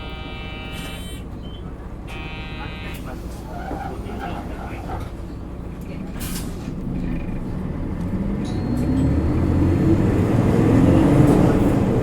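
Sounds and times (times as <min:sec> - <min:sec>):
bus engine accelerating: 0:02.9 - 0:12.0.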